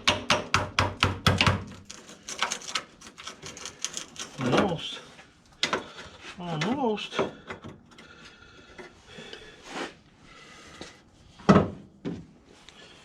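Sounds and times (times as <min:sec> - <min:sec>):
person speaking word: 0:04.4 - 0:05.0, 0:06.4 - 0:07.3.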